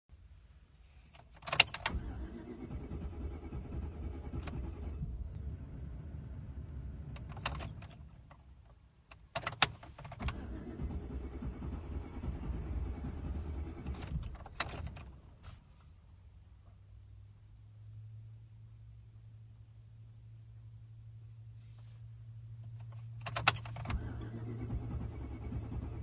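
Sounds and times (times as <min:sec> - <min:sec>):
engine cranking on starter: 0:01.4 - 0:08.4, 0:09.4 - 0:15.6, 0:22.9 - 0:26.0.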